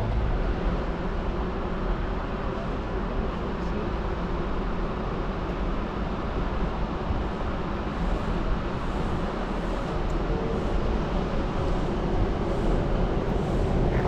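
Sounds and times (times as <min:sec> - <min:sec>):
moving train rumbling: 0:00.0 - 0:14.0.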